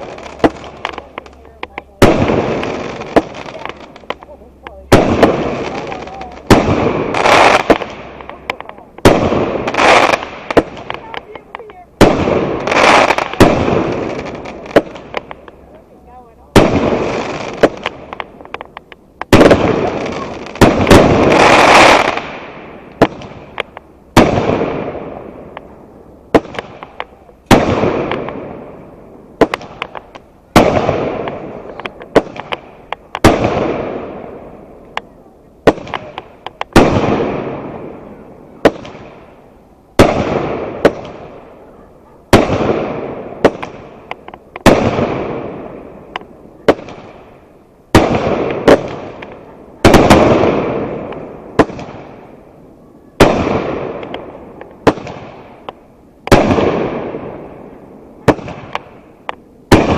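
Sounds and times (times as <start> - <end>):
crackling pops: 0.0 - 15.9, 16.5 - 28.6, 29.4 - 41.6, 42.2 - 52.6, 53.2 - 59.9
fireworks bangs: 0.0 - 59.9.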